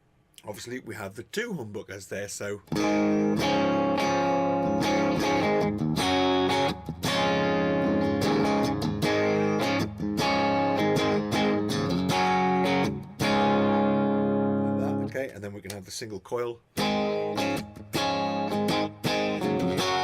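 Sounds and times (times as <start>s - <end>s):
electric guitar chords: 2.7s - 15.1s, 16.7s - 20.0s.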